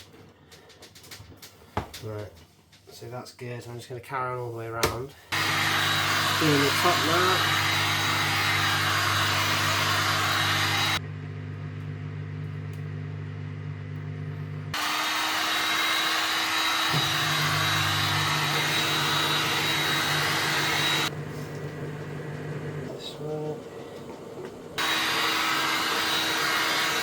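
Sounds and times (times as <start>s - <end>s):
heat gun blowing: 5.3s - 11.0s, 14.7s - 21.2s, 24.8s - 27.0s.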